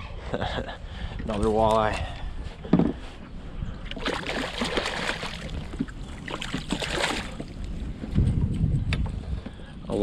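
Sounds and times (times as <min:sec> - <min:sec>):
water splashing: 0:03.9 - 0:07.6.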